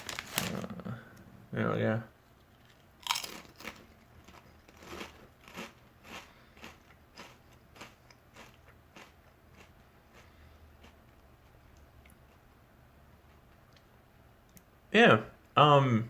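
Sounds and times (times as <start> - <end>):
chewing crunches: 2.6 - 12.5.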